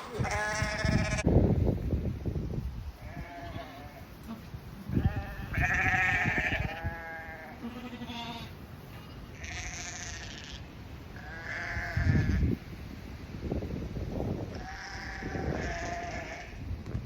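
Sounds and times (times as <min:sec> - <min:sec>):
sheep bleating: 0:00.0 - 0:01.3, 0:03.0 - 0:08.5, 0:09.4 - 0:10.6, 0:11.2 - 0:12.4, 0:14.6 - 0:16.6.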